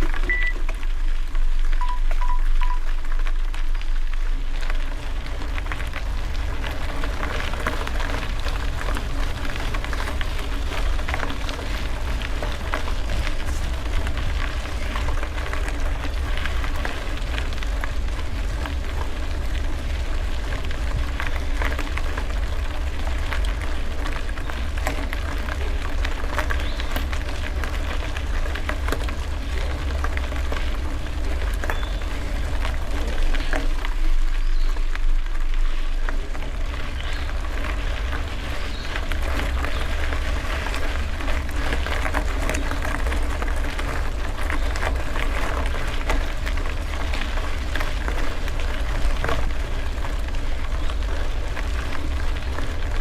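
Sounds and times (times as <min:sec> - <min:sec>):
bicycle rattling: 0:00.0 - 0:53.0
tyres crackling on gravel: 0:00.0 - 0:53.0
wind rumble on microphone: 0:00.0 - 0:53.0.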